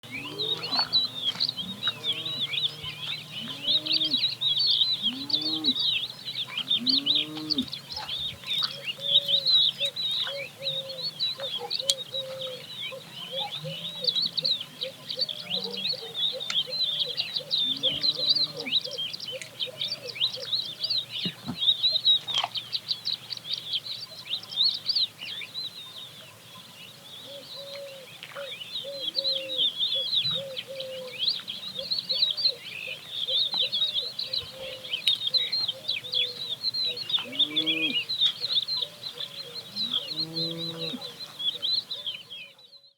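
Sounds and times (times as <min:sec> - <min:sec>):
cows lowing: 0:00.0 - 0:08.3, 0:17.6 - 0:18.9, 0:36.9 - 0:41.5
small birds chirping: 0:00.0 - 0:42.9.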